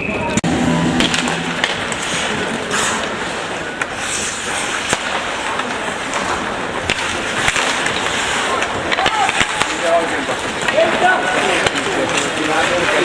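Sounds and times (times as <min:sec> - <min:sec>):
hockey sticks and puck clacking: 0:00.0 - 0:13.0
skates scraping on ice: 0:00.2 - 0:13.0.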